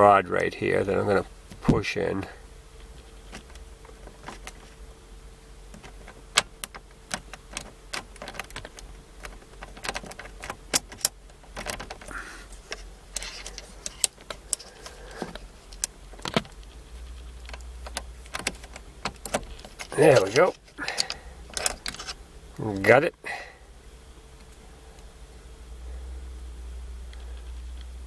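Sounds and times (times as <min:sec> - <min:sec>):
metallic clicks of ignition lock: 0:17.4 - 0:22.2.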